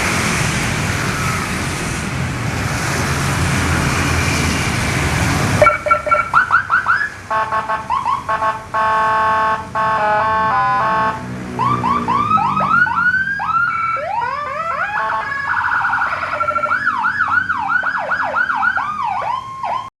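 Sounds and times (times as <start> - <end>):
police siren: 5.6 - 19.9.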